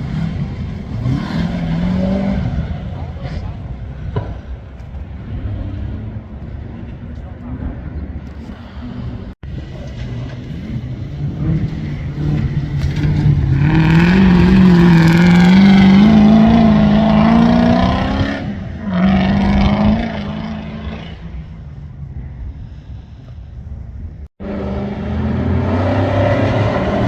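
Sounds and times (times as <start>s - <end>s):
racing vehicle engine revving: 0.0s - 4.5s, 8.9s - 21.6s, 24.4s - 27.0s.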